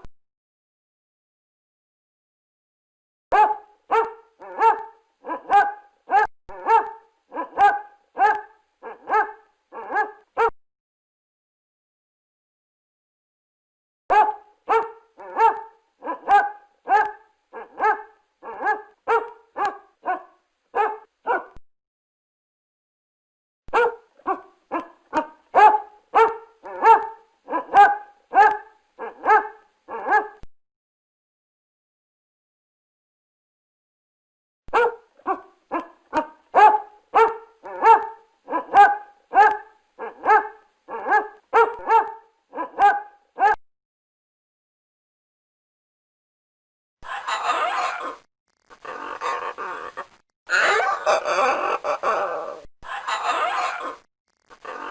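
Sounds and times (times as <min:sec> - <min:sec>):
dog barking: 0:03.3 - 0:10.5, 0:14.1 - 0:21.6, 0:23.7 - 0:30.4, 0:34.7 - 0:43.6, 0:49.2 - 0:54.9.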